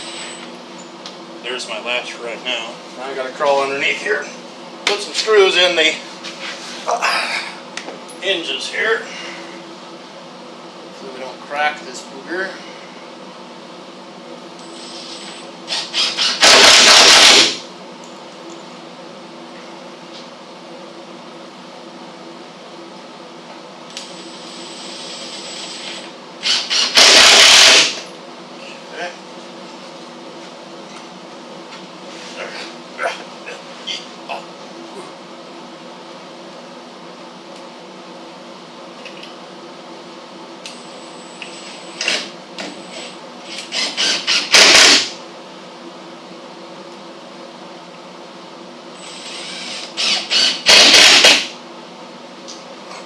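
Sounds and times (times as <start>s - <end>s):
steady hum: 0.0s - 53.0s
power drill driving a screw: 14.8s - 17.6s, 24.8s - 28.0s, 43.0s - 45.1s, 49.0s - 51.5s.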